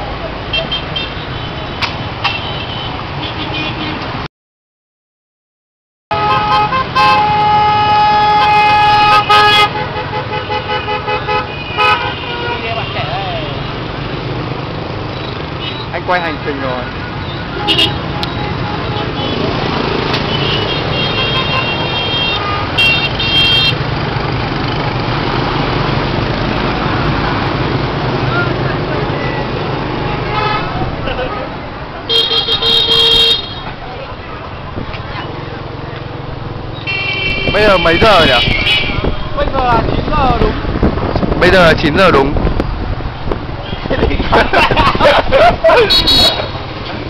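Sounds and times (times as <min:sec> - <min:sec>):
road traffic: 0:00.0 - 0:04.3, 0:06.1 - 0:47.0
vehicle horns honking: 0:02.2 - 0:04.0, 0:06.1 - 0:13.7, 0:15.2 - 0:16.0, 0:17.0 - 0:19.6, 0:20.2 - 0:23.8, 0:29.2 - 0:33.7, 0:36.7 - 0:39.4, 0:43.6 - 0:44.5, 0:45.7 - 0:46.7.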